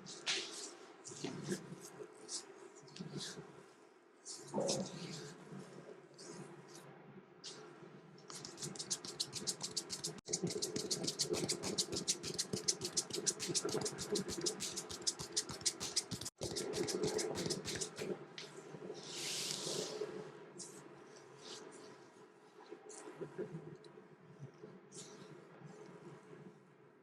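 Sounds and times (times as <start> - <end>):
head massage strokes on hair: 8.4 - 18.2.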